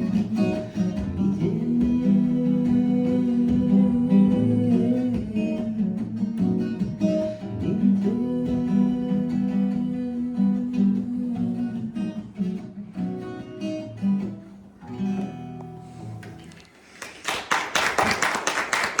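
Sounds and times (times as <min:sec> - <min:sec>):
acoustic guitar playing: 0:00.0 - 0:17.0
audience applause: 0:16.8 - 0:19.0.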